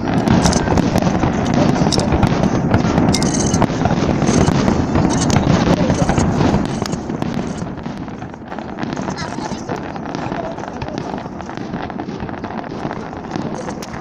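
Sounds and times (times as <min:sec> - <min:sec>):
fireworks popping and crackling: 0:00.0 - 0:14.0.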